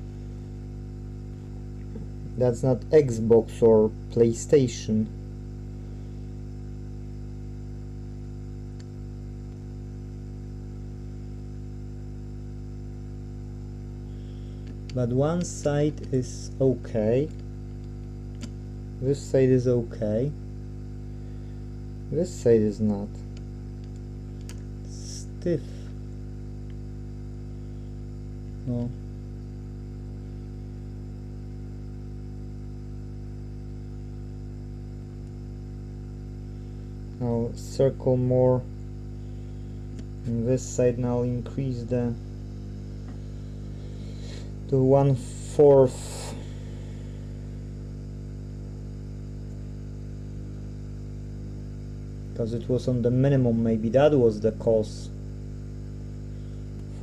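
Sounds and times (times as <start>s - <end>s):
electrical mains hum: 0.0s - 57.0s
faint hiss: 39.4s - 47.6s
air hissing: 45.4s - 47.8s.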